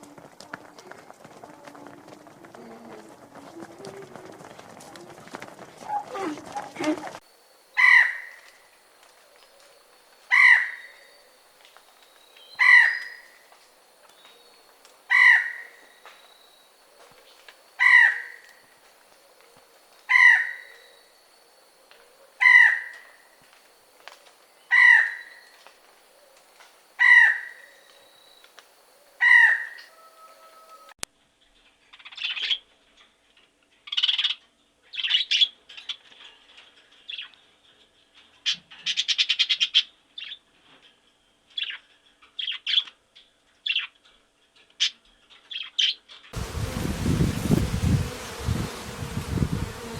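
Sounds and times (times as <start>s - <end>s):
songbird chirps and trill: 5.8s - 23.4s, 24.2s - 26.4s
bird's harsh call: 12.4s - 13.4s.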